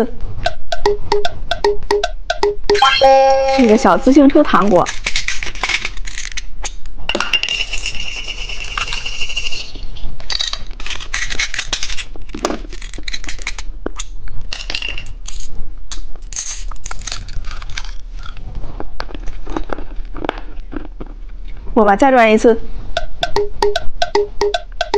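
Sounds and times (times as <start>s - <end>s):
plastic pieces clicking and rattling: 4.4s - 18.4s.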